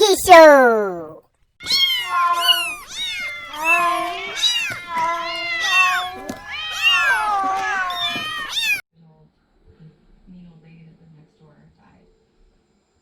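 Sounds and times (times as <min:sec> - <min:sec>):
cat meowing: 0:00.0 - 0:08.8.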